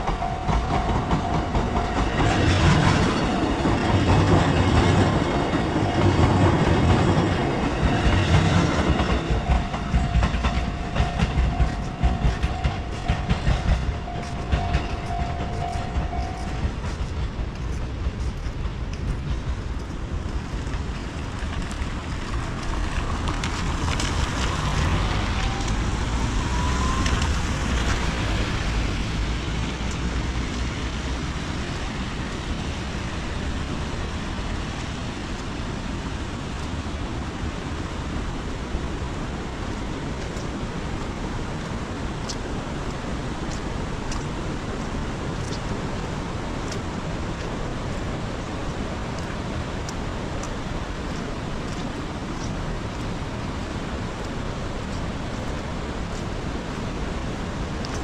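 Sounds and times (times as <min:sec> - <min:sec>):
heavy rain: 0:00.0 - 0:58.0
vehicle passing on wet road: 0:20.2 - 0:58.0
light ticks: 0:42.2 - 0:42.4, 0:43.5 - 0:44.4, 0:45.4 - 0:45.7, 0:49.1 - 0:53.2, 0:54.9 - 0:58.0.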